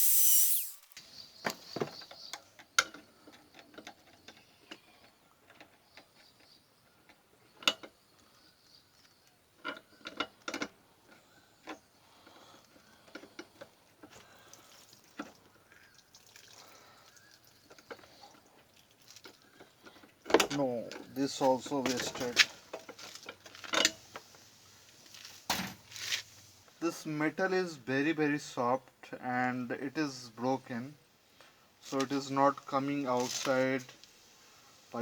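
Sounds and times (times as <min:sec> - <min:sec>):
screwdriver clicking and scraping metal: 0:00.0 - 0:01.0.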